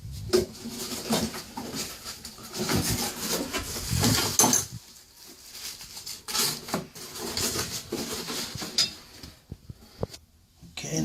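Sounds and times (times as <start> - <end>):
rubbing and scraping handling noises: 0.0 - 10.2.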